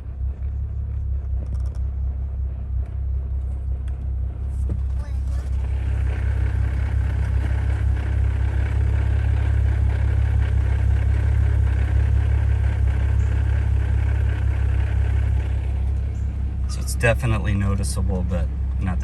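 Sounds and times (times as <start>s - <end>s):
car engine idling: 0.0s - 19.0s.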